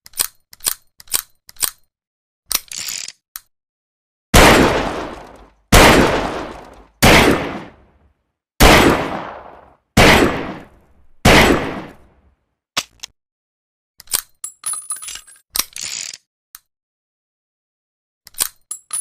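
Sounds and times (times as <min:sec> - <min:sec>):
gunshots with echo: 0:04.4 - 0:08.0, 0:08.6 - 0:12.1
metallic clicks and clinks: 0:14.0 - 0:16.2, 0:18.3 - 0:19.0.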